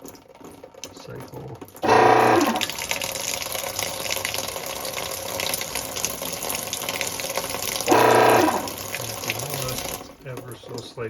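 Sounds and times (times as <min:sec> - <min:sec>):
washing machine motor hum: 0:00.0 - 0:11.0
rushing grinding noise: 0:01.8 - 0:02.8, 0:06.4 - 0:10.2.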